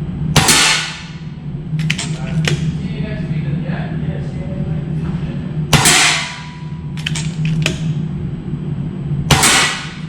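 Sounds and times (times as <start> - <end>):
air rifle shots: 0.4 - 1.2, 9.3 - 10.0.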